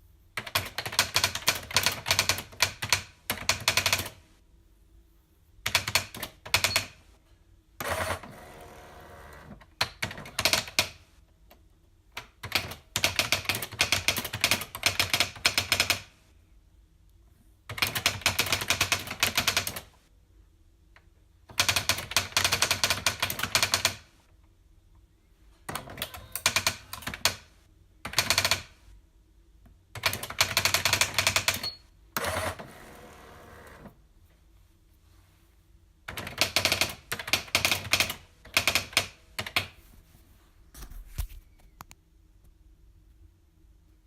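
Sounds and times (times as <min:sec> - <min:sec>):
typewriter keys clicking: 0:00.4 - 0:04.2, 0:12.2 - 0:16.1, 0:17.7 - 0:19.9, 0:21.5 - 0:24.0, 0:30.0 - 0:31.8, 0:36.1 - 0:39.7.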